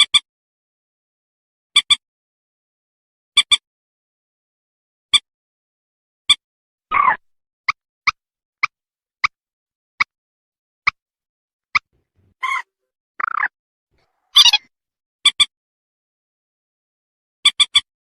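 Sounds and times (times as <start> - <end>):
recorded rail bird calls: 11.8 - 13.5, 14.1 - 14.7.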